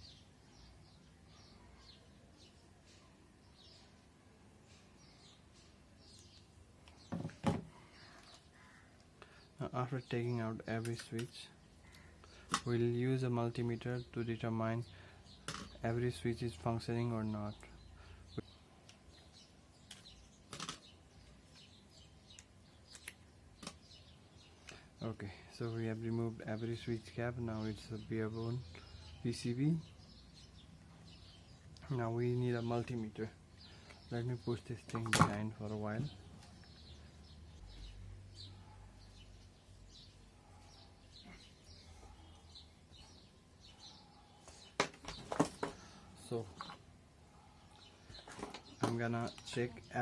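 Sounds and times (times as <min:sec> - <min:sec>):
faint bird chirps: 0:00.0 - 0:12.4, 0:35.8 - 0:50.0
small parts clicking on workbench: 0:19.9 - 0:20.9.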